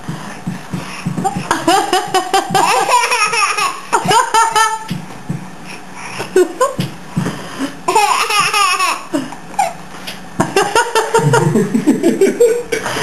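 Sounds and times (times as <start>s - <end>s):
baby laughing: 1.3s - 4.9s, 7.9s - 9.8s.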